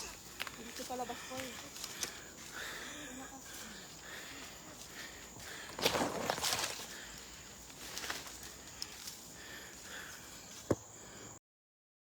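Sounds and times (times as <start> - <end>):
footsteps on muddy trail: 0.0 - 11.2.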